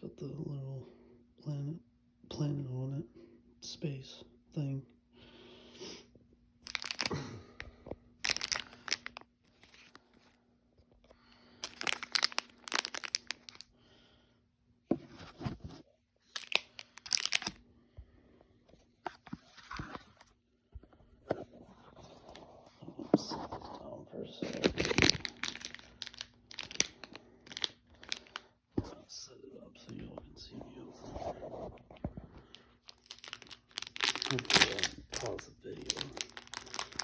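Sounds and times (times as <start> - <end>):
faint steady hum: 0.0 - 37.0
plastic packaging crinkling: 6.6 - 7.2, 8.2 - 10.3, 11.6 - 13.7, 16.3 - 17.6, 24.4 - 28.4, 32.4 - 37.0.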